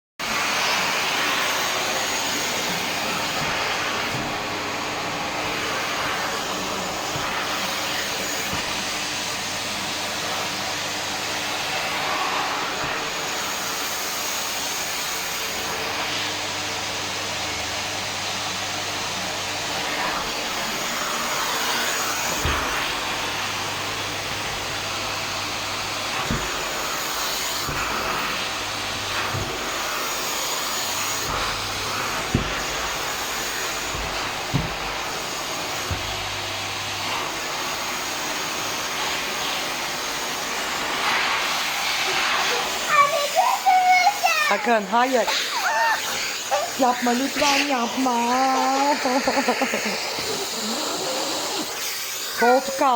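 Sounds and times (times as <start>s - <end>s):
vacuum cleaner running: 0.2s - 52.9s
dull knocks: 32.3s - 32.8s, 33.9s - 35.0s.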